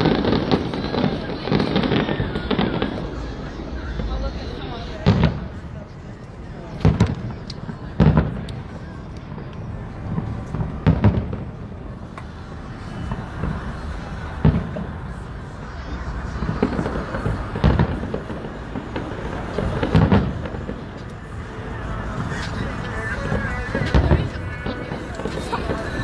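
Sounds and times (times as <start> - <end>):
fireworks bursting with booms: 0.0 - 5.8, 6.8 - 26.0.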